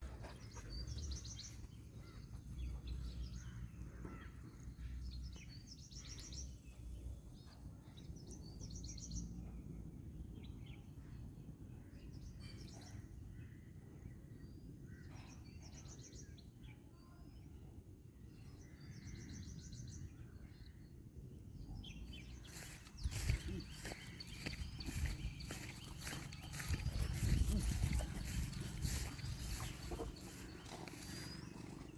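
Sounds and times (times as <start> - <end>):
low outdoor rumble: 22.3 - 31.9
rustles: 22.4 - 31.9.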